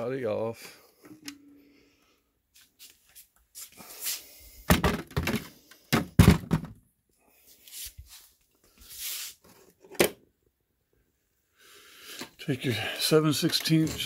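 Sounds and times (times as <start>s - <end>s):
knocks on vending machine body: 6.0s - 6.8s.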